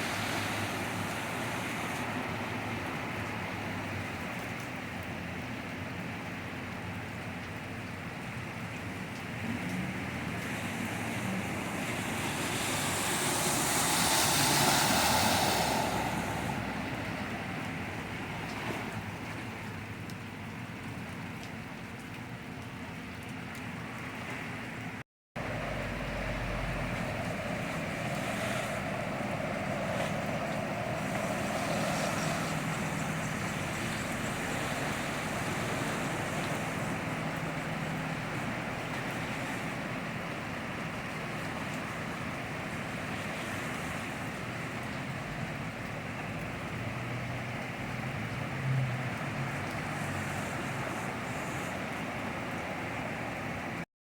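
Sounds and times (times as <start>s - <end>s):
low engine hum: 0.0s - 53.8s
steady rain: 0.0s - 53.8s
vehicle splashing through water: 0.0s - 53.9s.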